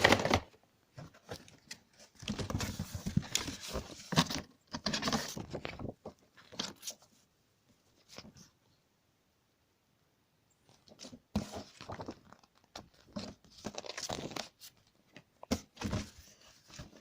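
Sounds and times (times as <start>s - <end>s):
paper crinkling and tearing: 11.5s - 14.7s.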